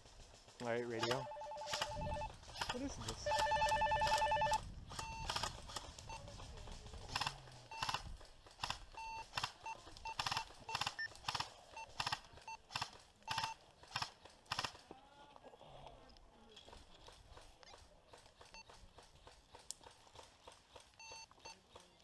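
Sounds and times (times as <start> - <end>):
two-way radio beeps and clicks: 1.0 - 2.3, 3.3 - 6.2, 9.0 - 13.6, 21.0 - 21.7.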